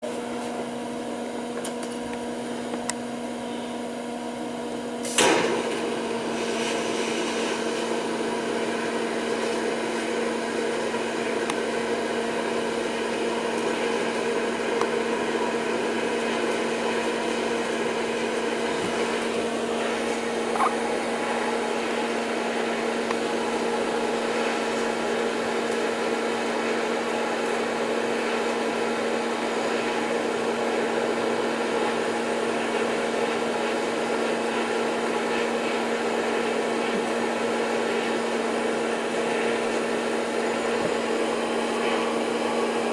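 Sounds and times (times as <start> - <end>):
welder electrical hum: 0.0 - 42.9
welding arc striking crack: 5.1 - 5.9.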